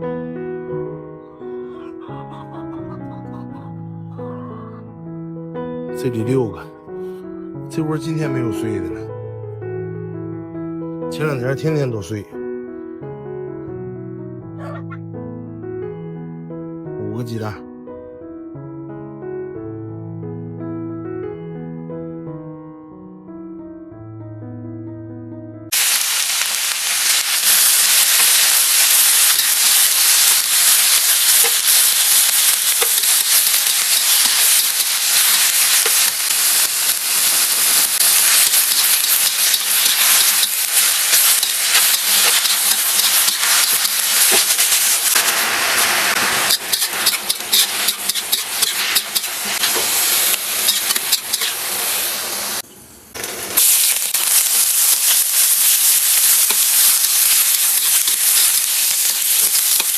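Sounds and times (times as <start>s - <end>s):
food sizzling in a hot pan: 25.7s - 52.6s, 53.2s - 59.9s.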